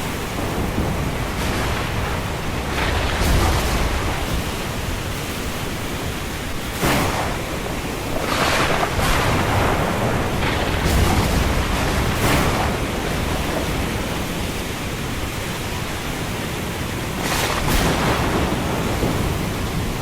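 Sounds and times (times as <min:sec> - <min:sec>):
wind rushing in gusts: 0:00.0 - 0:20.0.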